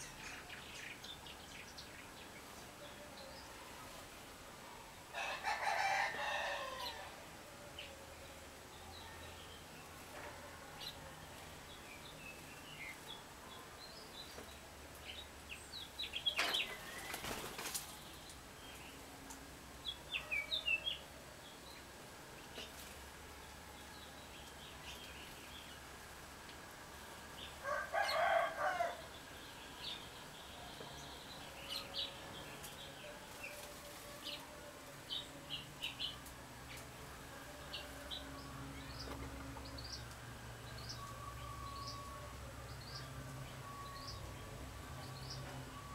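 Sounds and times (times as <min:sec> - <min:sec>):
small birds chirping: 0:07.8 - 0:26.0
wings fluttering: 0:16.6 - 0:18.1.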